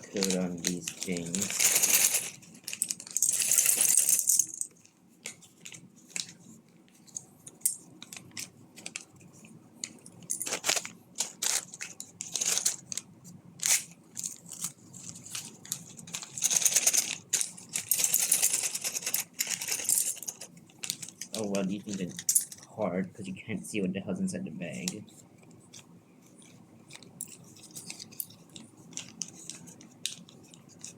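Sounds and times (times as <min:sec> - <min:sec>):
plastic bags crinkling: 0:00.0 - 0:04.4, 0:10.4 - 0:22.8.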